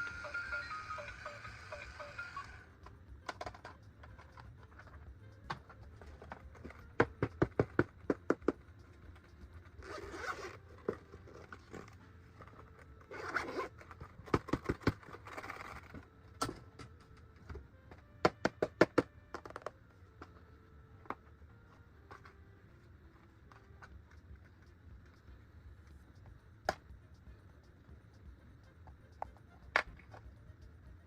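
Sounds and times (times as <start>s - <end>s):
zip-like rasps: 9.8s - 10.8s, 13.1s - 13.8s.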